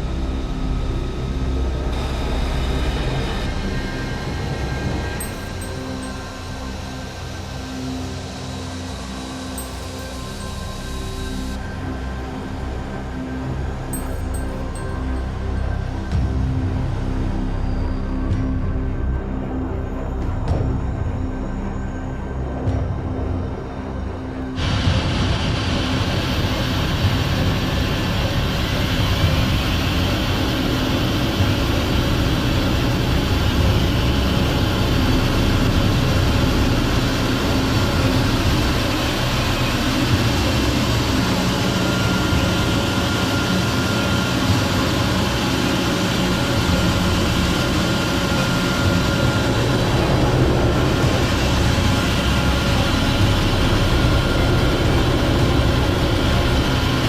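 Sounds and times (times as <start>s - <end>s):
faint high whine: 4.8s - 16.3s
jet engine rumble and hiss: 23.9s - 57.0s.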